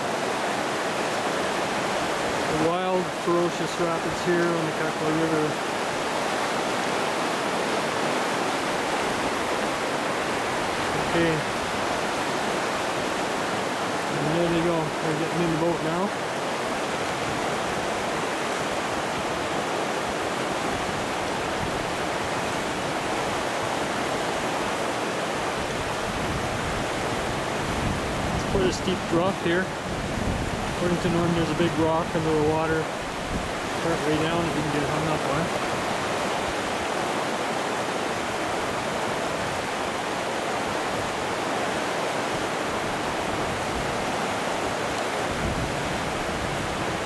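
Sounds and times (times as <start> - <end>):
river rapids rushing over rocks: 0.0 - 47.0.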